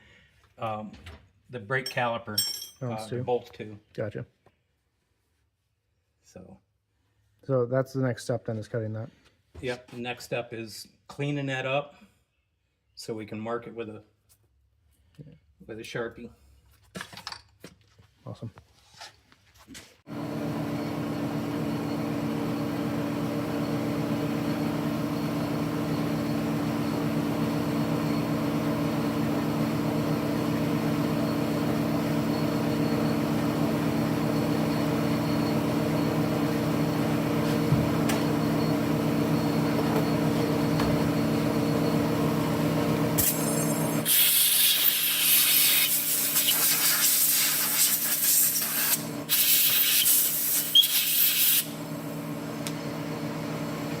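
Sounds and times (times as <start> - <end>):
power tool motor whine: 31.3 - 46.8.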